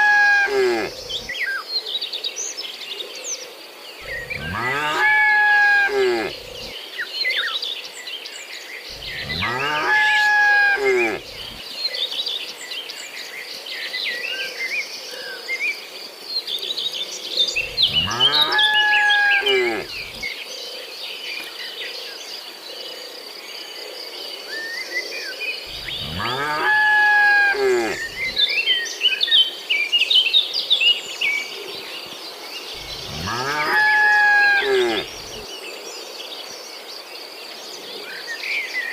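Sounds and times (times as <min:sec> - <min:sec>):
cattle mooing: 0:00.0 - 0:01.3, 0:04.0 - 0:06.7, 0:08.9 - 0:11.6, 0:17.6 - 0:20.2, 0:25.7 - 0:28.4, 0:32.8 - 0:35.4.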